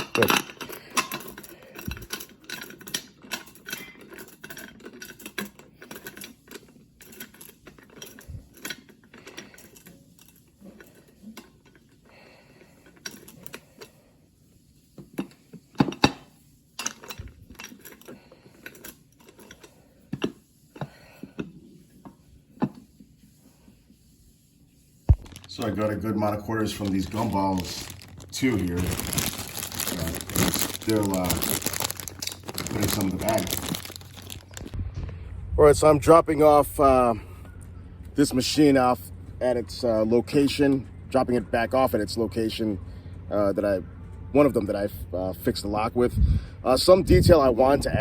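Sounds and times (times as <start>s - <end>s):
coins clinking and rattling: 26.5s - 34.8s.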